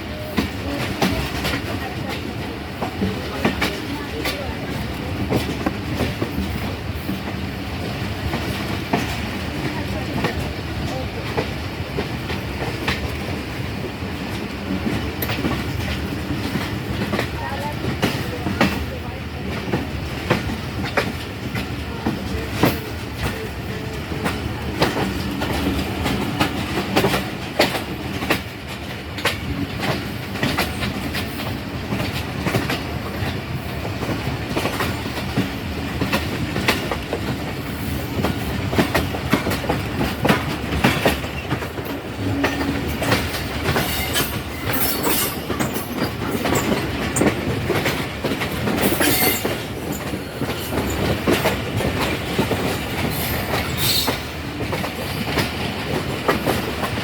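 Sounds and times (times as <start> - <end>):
train coaches rumbling: 0.0 - 57.0
wheels clattering over rail joints: 19.7 - 57.0
high-pitched train screeches: 48.8 - 49.6, 53.1 - 54.3.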